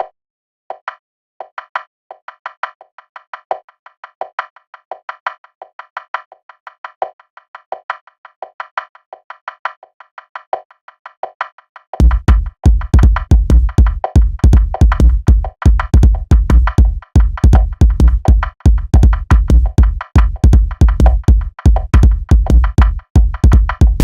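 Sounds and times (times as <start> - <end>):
drum machine kick: 12.0 - 24.0
dry synthesized clicks: 23.4 - 24.0
synth bass: 23.5 - 24.0.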